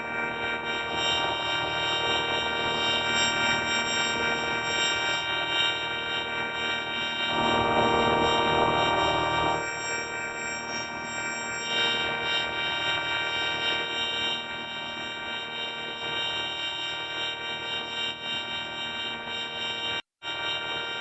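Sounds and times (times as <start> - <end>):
buzzy electronic drone: 7.2 - 9.7.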